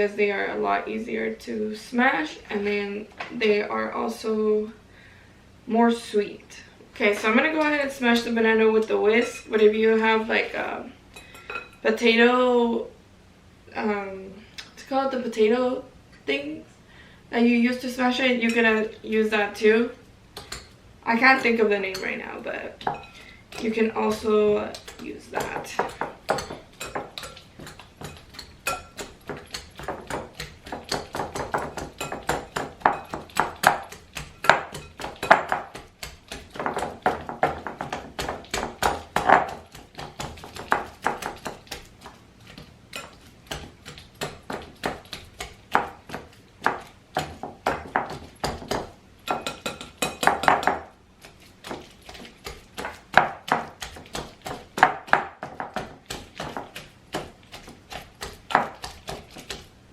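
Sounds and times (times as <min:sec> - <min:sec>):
whisk tapping a bowl: 0:22.8 - 0:59.7.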